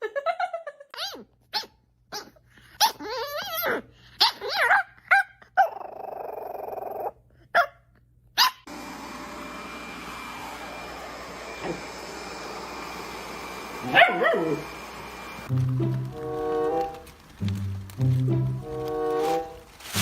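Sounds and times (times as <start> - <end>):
dog barking and yipping: 1.0 - 5.5, 8.4 - 8.7, 13.8 - 14.8
dog grumbling: 5.6 - 7.2.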